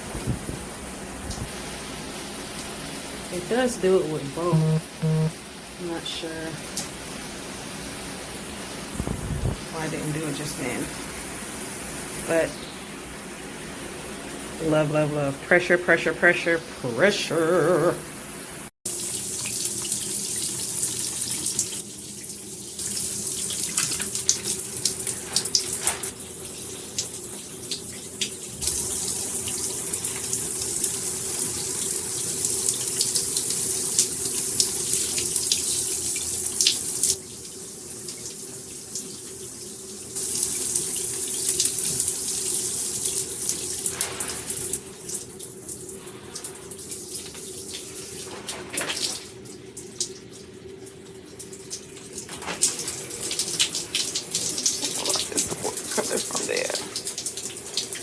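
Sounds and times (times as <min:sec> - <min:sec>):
water spraying from shower head: 0:40.2 - 0:44.8.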